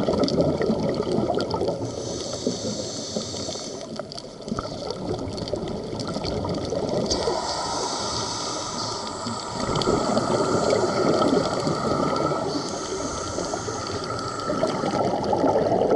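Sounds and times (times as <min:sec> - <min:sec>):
underwater rushing water and bubbles: 0:00.0 - 0:15.9
high hiss: 0:01.9 - 0:03.9, 0:07.1 - 0:15.0.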